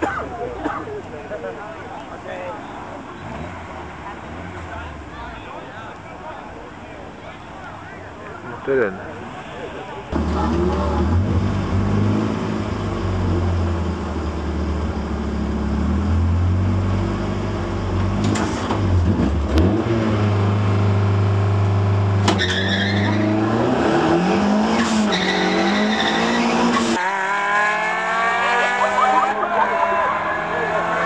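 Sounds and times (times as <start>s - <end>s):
car engine revving: 2.8s - 5.7s, 10.1s - 31.0s.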